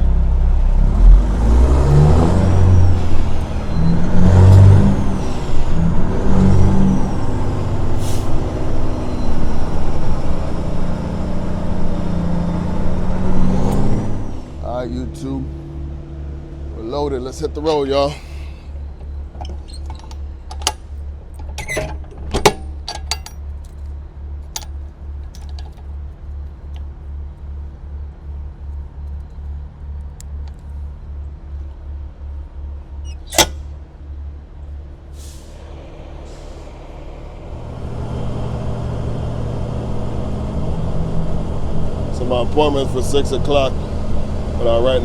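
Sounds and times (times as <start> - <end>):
truck pulling away under load: 0.0 - 27.0, 28.1 - 45.0
diesel truck engine idling: 0.0 - 45.0
clicks and knocks: 19.0 - 23.9.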